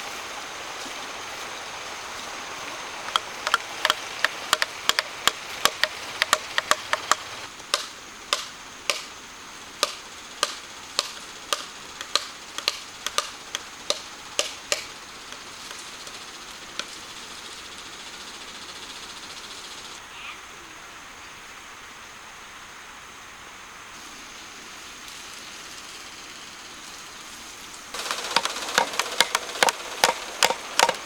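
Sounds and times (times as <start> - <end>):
steady hiss: 0.0 - 31.0
hand tool striking wood: 3.1 - 9.1, 9.8 - 17.0, 28.0 - 31.0.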